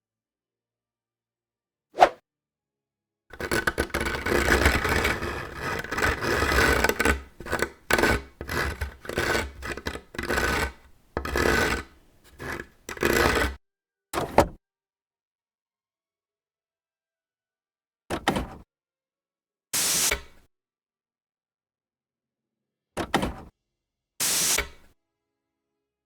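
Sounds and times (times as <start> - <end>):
scraping against a surface: 3.3 - 13.6.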